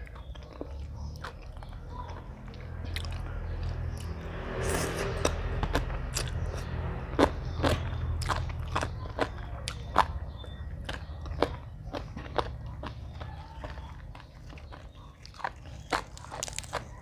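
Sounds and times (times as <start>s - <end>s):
person chewing crunchy food: 0.0s - 17.0s.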